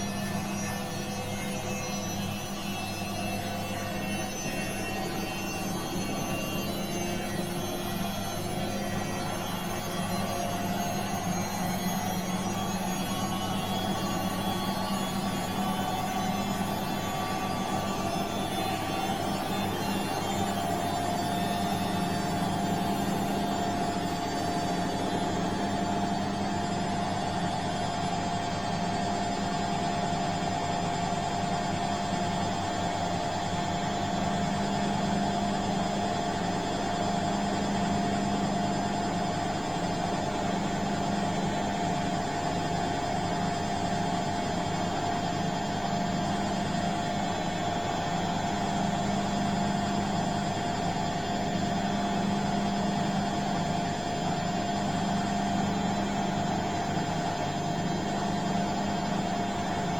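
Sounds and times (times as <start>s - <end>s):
high whine: 0.0s - 31.5s
washing machine motor hum: 0.0s - 59.9s.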